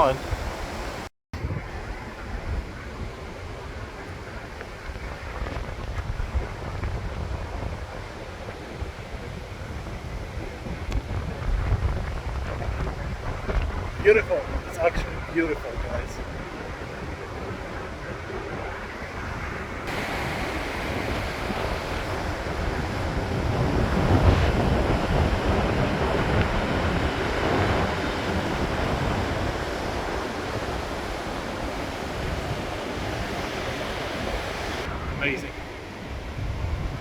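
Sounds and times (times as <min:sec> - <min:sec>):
waterfall roaring: 0:00.0 - 0:01.1, 0:19.8 - 0:36.0
wind buffeting microphone: 0:00.0 - 0:37.0.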